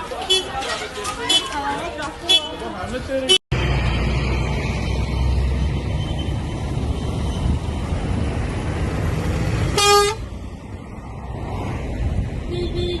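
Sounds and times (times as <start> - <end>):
car horn toot: 9.8 - 10.2, 12.5 - 13.0.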